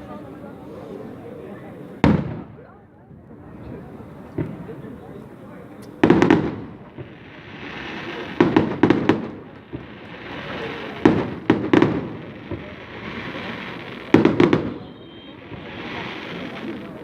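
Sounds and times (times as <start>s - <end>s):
fireworks bangs: 2.0s - 2.7s, 3.7s - 17.0s
fireworks hiss: 5.9s - 17.0s.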